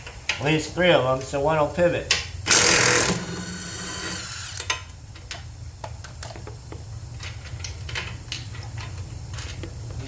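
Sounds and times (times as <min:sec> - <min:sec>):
power tool motor coasting down: 0:02.5 - 0:04.8.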